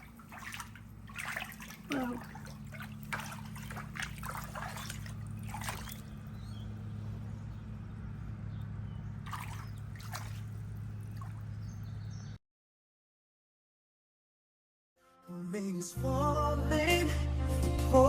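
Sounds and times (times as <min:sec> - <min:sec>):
water sloshing and splashing: 0:00.0 - 0:07.4, 0:09.2 - 0:12.2
steady low hum: 0:00.0 - 0:12.3.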